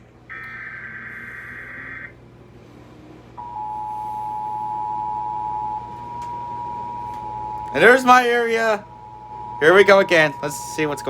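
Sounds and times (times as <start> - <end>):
buzzing digital data tones: 0.3 - 2.2
steady attention tone: 0.3 - 2.2, 3.4 - 11.0.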